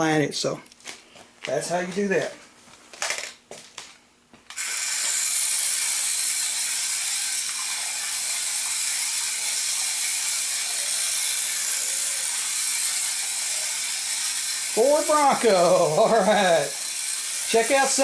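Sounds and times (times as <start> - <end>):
toy truck motor whirring: 4.5 - 18.0.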